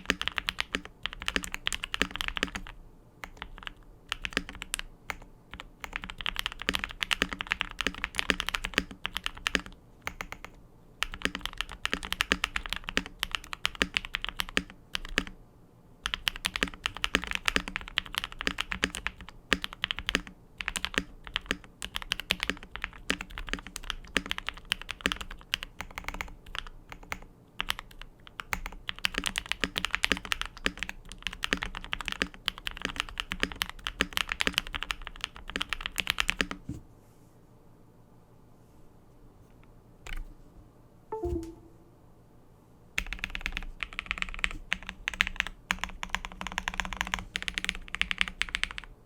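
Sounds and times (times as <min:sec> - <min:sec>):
fast typing on mechanical keyboard: 0:00.0 - 0:15.4, 0:16.0 - 0:36.6, 0:43.0 - 0:49.0.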